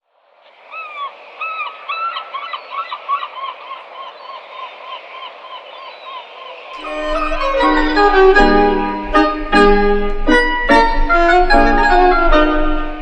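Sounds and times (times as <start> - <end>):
flock of birds honking: 6.8 - 13.0.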